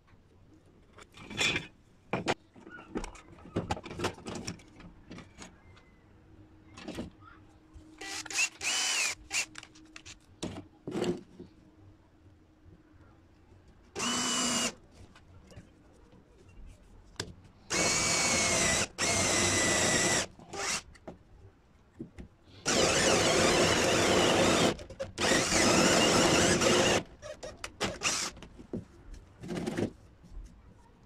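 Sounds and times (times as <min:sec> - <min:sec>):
electric drill whining: 0:08.0 - 0:09.5, 0:14.0 - 0:14.7, 0:17.7 - 0:20.8, 0:22.6 - 0:27.1, 0:27.8 - 0:28.3.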